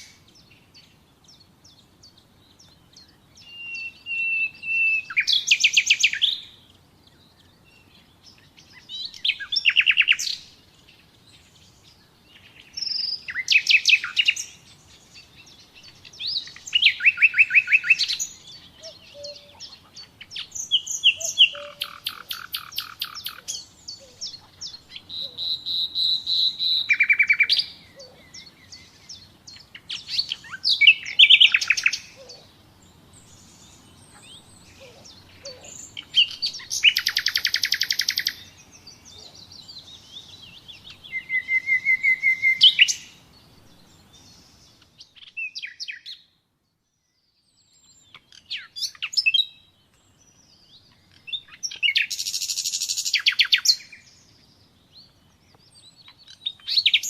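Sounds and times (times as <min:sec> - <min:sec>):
nightingale singing: 0:00.0 - 0:57.0.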